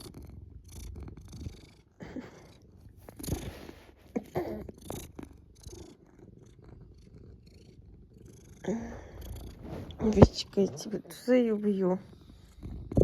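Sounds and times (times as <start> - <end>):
cat purring: 0.0 - 13.0
soft rustles and clicks: 9.1 - 11.6.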